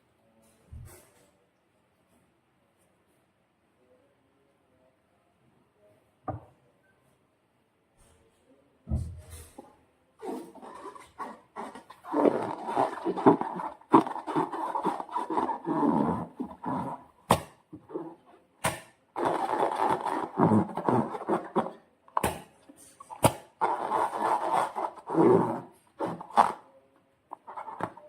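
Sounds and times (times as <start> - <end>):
slime squelching and rubbing: 10.2 - 18.3, 19.1 - 26.7, 27.3 - 28.0.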